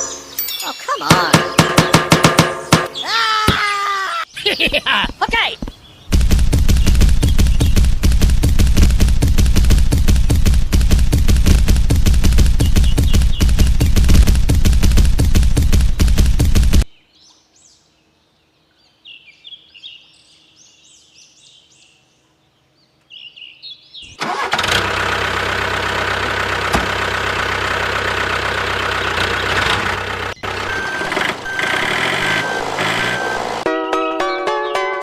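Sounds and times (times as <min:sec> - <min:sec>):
engine idling: 0:24.2 - 0:33.7
high beeping: 0:30.4 - 0:33.7.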